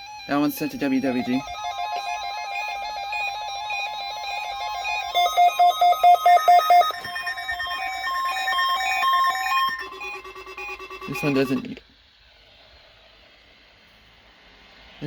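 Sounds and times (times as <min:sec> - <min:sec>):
warbling electronic alarm tone: 0:00.0 - 0:11.8
steady electronic tone: 0:00.4 - 0:11.8
quick electronic beeps: 0:00.6 - 0:11.8.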